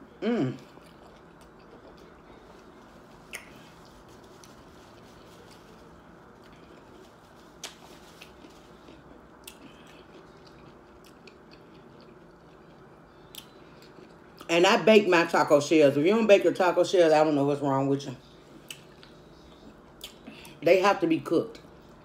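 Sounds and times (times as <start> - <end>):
person chewing: 0.0 - 14.5.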